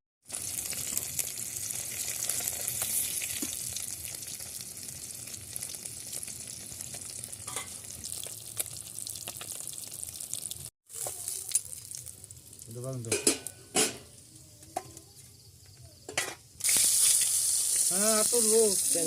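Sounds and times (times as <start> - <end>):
food sizzling in hot oil: 0.2 - 19.0.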